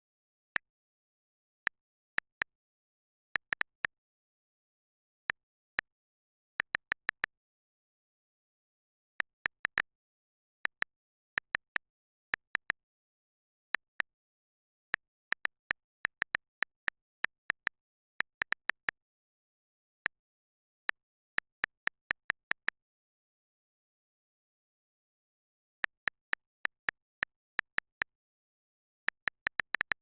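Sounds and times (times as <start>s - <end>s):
phone keyboard key clicks: 5.0s - 7.2s, 10.4s - 19.2s, 19.8s - 22.7s, 25.6s - 30.0s.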